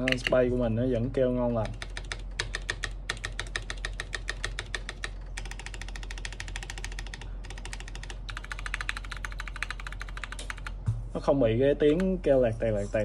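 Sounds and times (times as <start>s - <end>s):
mechanical keyboard clicking: 0.0s - 0.4s, 1.6s - 10.8s.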